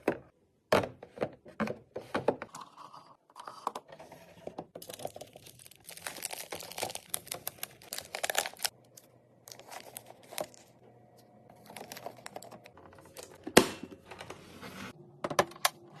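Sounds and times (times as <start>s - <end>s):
plastic packaging crinkling: 4.8s - 10.8s, 11.5s - 13.4s.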